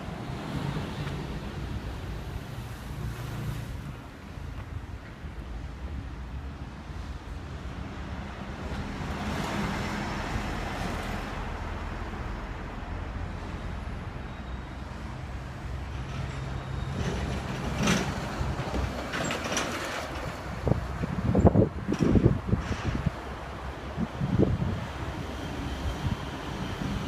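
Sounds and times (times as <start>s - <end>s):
wind noise: 16.8s - 27.0s.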